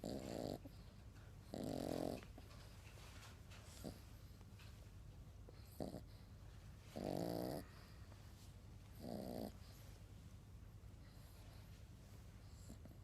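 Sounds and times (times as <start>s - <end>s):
pet snoring: 0.0s - 0.8s, 1.4s - 2.4s, 3.7s - 4.3s, 5.5s - 6.3s, 6.9s - 8.0s, 8.9s - 9.8s.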